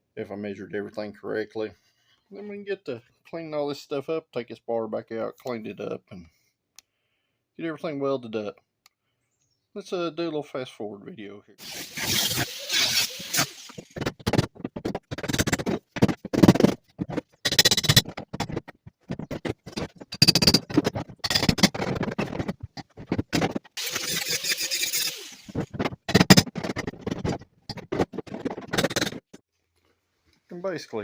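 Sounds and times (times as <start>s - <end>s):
hissing tool noise: 11.6s - 14.0s, 23.8s - 25.6s
metal scraping and clatter: 11.6s - 29.4s.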